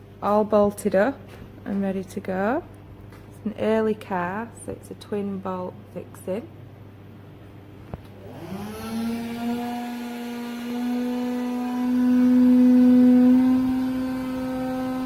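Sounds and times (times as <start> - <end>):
small electric motor whining: 8.1 - 15.0.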